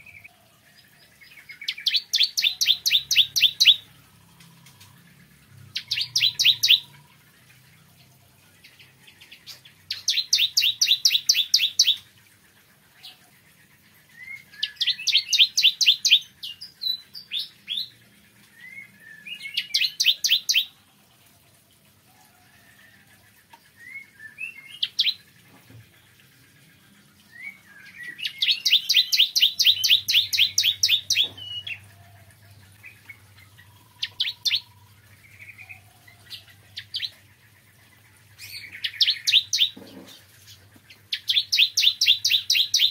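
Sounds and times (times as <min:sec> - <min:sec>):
bird singing rapid high notes: 0:26.8 - 0:31.8.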